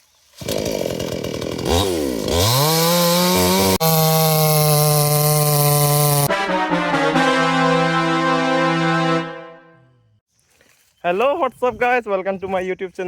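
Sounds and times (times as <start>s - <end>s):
chainsaw engine running: 0.4s - 6.3s.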